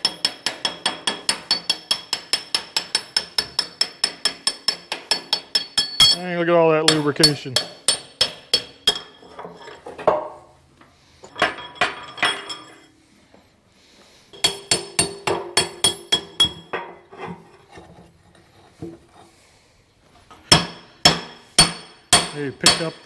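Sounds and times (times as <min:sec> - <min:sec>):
hammer striking steel pin: 0:00.0 - 0:06.3, 0:06.9 - 0:09.2, 0:14.4 - 0:16.9, 0:20.5 - 0:23.0.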